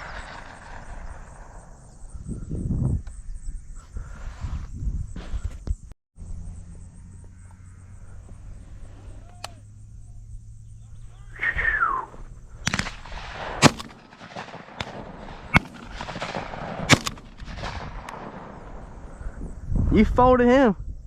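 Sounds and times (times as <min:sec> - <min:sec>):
shotgun shots: 0:00.0 - 0:02.0, 0:12.6 - 0:18.9.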